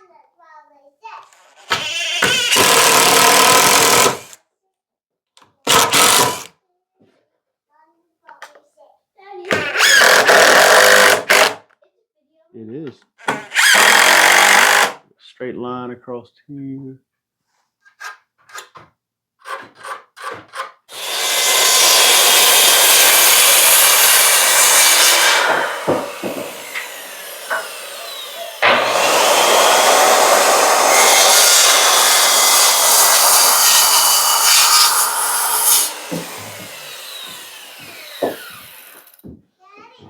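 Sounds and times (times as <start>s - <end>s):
power saw cutting board: 1.4s - 4.4s, 5.7s - 6.5s, 9.5s - 11.6s, 13.2s - 15.0s, 20.9s - 39.4s.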